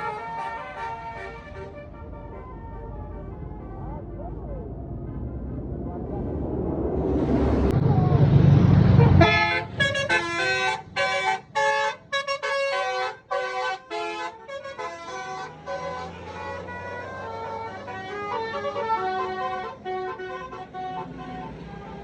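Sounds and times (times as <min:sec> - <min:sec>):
bus horn playing a tune: 0:00.0 - 0:03.5, 0:08.9 - 0:22.0
bus passing: 0:00.0 - 0:22.0.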